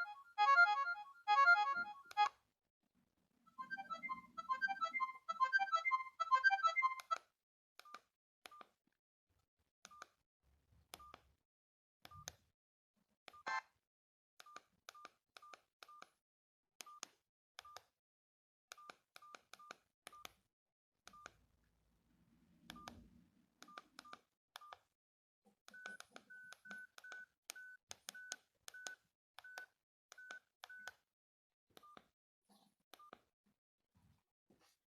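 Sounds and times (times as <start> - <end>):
phone keypad beeps: 25.7 - 31.0.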